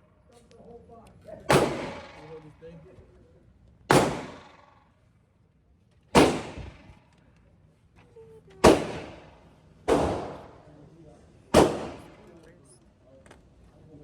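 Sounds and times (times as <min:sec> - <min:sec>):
gunshots with echo: 0:01.5 - 0:02.4, 0:03.9 - 0:04.8, 0:06.2 - 0:06.8, 0:08.6 - 0:09.3, 0:09.9 - 0:10.6, 0:11.5 - 0:12.2.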